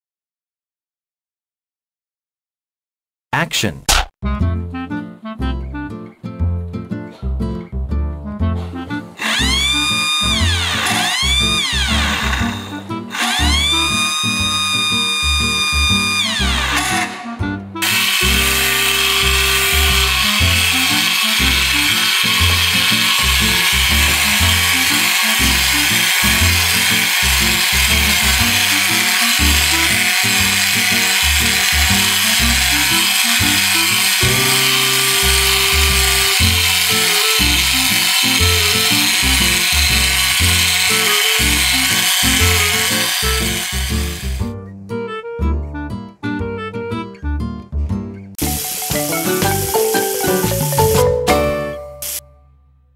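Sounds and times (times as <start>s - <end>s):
background music: 4.2s - 52.3s
toy motor whirring: 9.2s - 44.4s, 48.4s - 51.0s, 52.0s - 52.2s.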